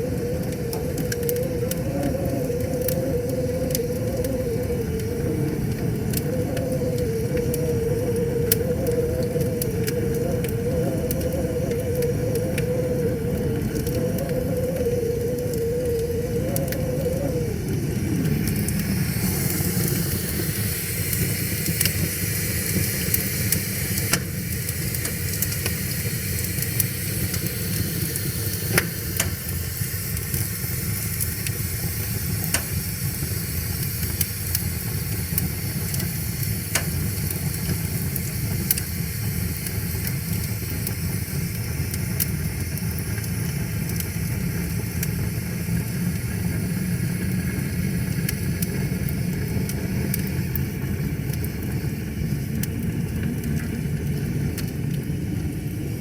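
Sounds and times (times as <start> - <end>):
wavering tone sliding down: 0.0 - 21.8
wood fire crackling and popping: 0.0 - 56.0.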